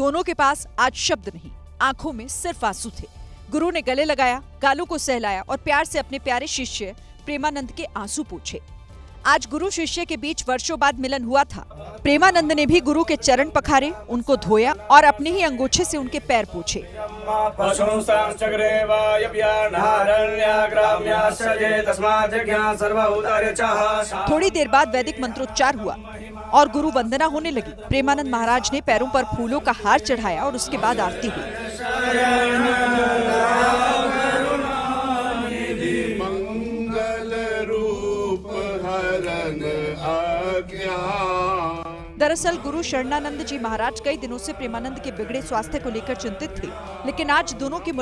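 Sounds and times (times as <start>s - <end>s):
male voices chanting: 11.7s - 48.0s.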